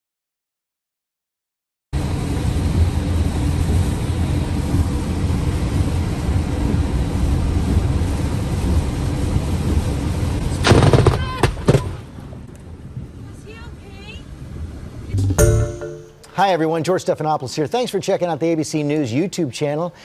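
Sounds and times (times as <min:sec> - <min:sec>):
low rumble: 0:02.0 - 0:10.5
lightning crack: 0:02.2 - 0:13.1.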